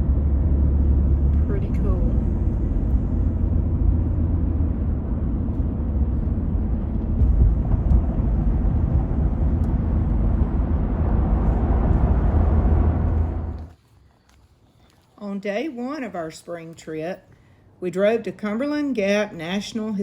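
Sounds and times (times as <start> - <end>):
vehicle driving rumble: 0.0 - 13.8.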